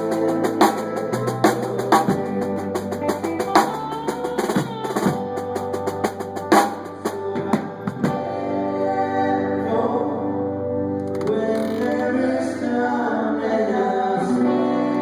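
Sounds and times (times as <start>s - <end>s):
live band playing: 0.0s - 9.6s.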